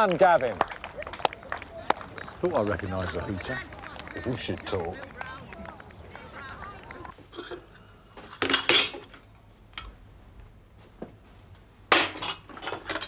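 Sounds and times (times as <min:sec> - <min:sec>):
crockery and cutlery clinking: 0:07.3 - 0:09.9, 0:11.9 - 0:13.0.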